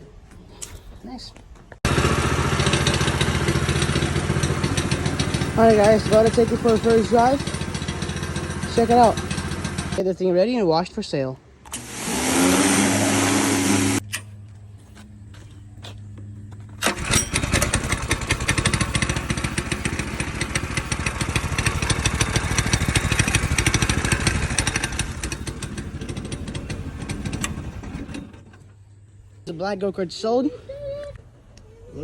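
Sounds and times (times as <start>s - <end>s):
go-kart engine running: 1.9s - 10.0s, 11.8s - 14.0s, 16.6s - 28.7s.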